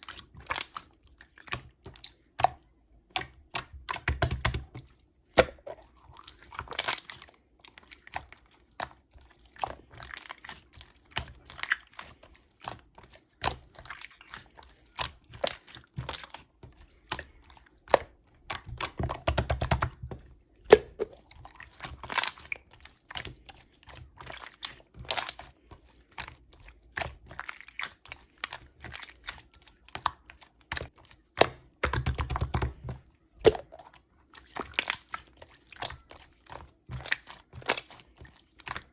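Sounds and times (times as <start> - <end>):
slime clicking and popping: 17.9 - 20.1, 29.9 - 32.8, 33.4 - 33.8.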